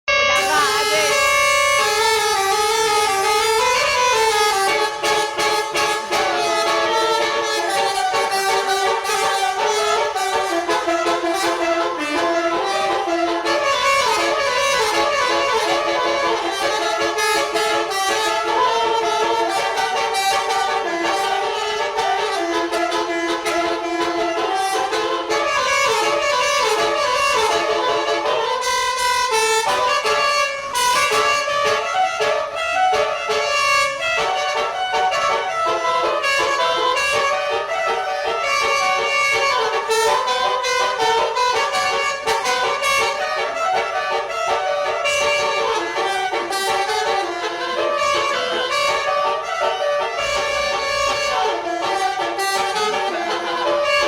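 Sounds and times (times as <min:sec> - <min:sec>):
multi-tone bus horn melody: 0:00.0 - 0:54.0.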